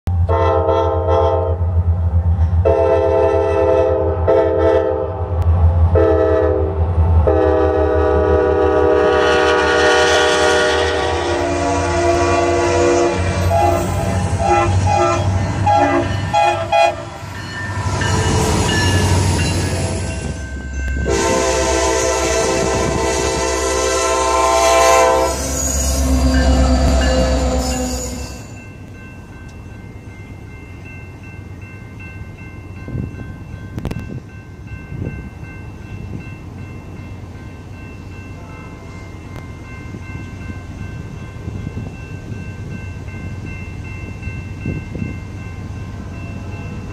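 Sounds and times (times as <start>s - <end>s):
locomotive air horn blasts: 0.2s - 1.6s, 2.6s - 5.3s, 5.9s - 17.2s, 21.0s - 28.5s
locomotive engine rumble: 5.1s - 32.0s.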